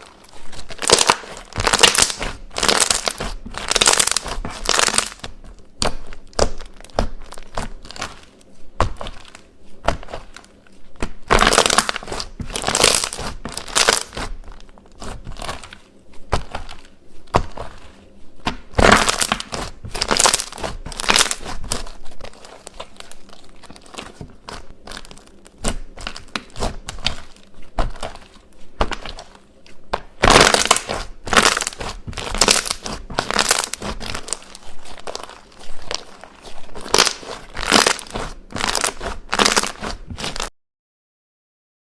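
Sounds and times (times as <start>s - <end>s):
slime squished by hand: 0.0s - 40.5s.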